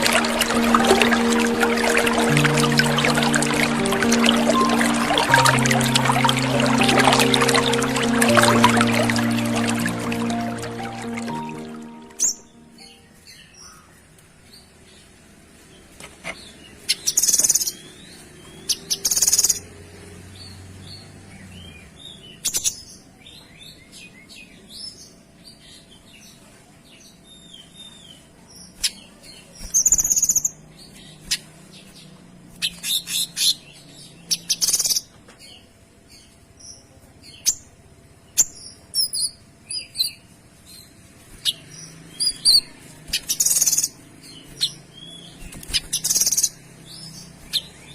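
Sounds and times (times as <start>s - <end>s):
songbird chirping and trilling: 0.0s - 14.1s, 38.3s - 47.9s.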